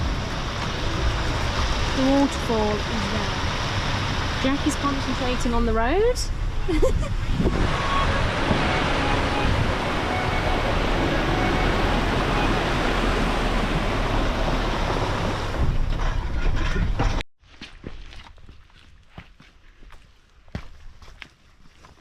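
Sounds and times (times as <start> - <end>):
water rushing: 0.0 - 15.7
engine and tyre rumble: 0.0 - 17.2.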